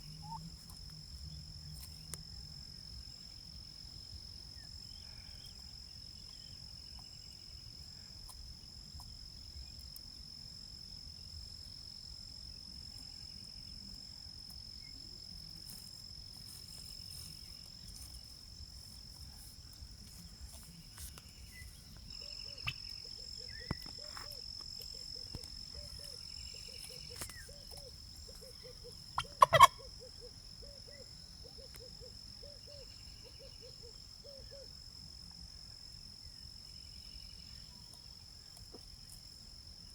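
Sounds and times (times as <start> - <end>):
soft clucking: 29.2 - 29.8
turkey gobbling: 29.2 - 29.8.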